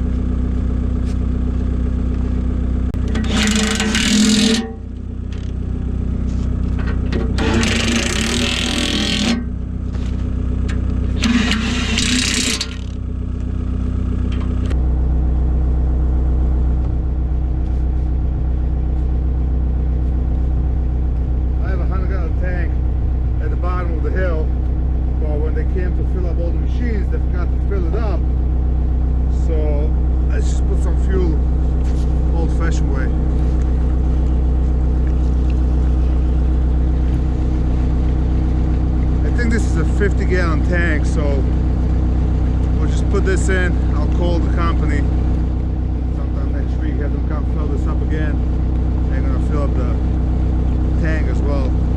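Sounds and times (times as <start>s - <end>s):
engine humming: 0.0s - 51.9s.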